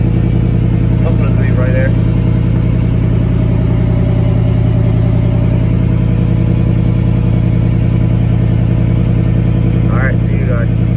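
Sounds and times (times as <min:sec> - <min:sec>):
truck engine idling deeply: 0:00.0 - 0:10.9.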